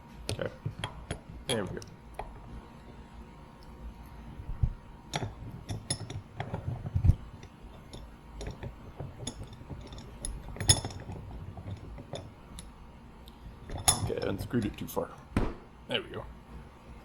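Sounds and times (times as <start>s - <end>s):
metal sockets clinking: 0.2s - 3.0s, 4.0s - 12.9s, 13.6s - 15.7s
dull knock: 15.4s - 15.7s.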